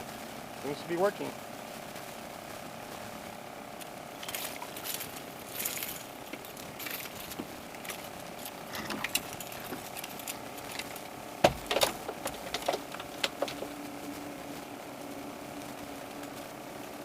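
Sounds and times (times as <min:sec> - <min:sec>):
faint steady hum: 0:00.0 - 0:17.0
scattered knocks and clicks: 0:04.2 - 0:13.8.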